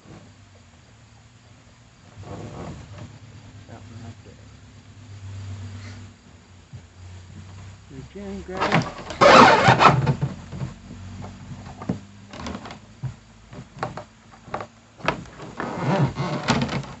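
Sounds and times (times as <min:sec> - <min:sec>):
rustling scrape: 0:02.2 - 0:03.2, 0:08.3 - 0:12.8, 0:14.4 - 0:17.0.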